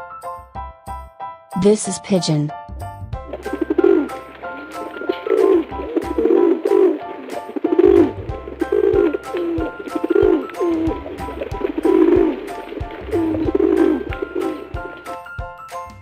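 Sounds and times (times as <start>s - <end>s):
light background music: 0.0s - 16.0s
pigeon cooing: 3.3s - 15.2s.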